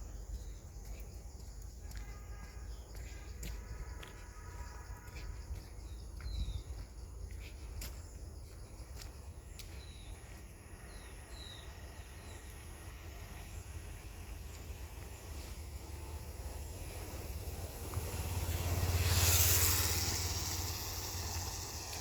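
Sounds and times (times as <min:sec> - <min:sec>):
high insect drone: 0:08.0 - 0:22.0.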